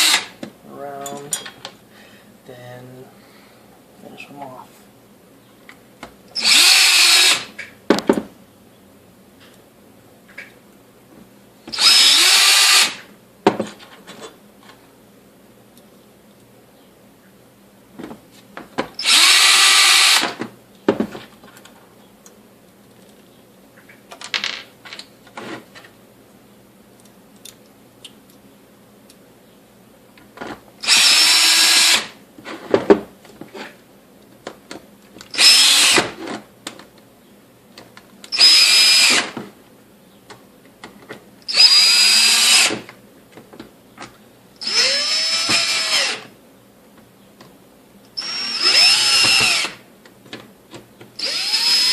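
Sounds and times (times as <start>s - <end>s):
electric screwdriver running: 6.4s - 7.5s, 11.8s - 13.0s, 19.0s - 20.3s, 30.8s - 32.1s, 35.4s - 36.0s, 38.4s - 39.3s, 44.6s - 46.3s, 48.2s - 49.8s, 51.2s - 51.9s.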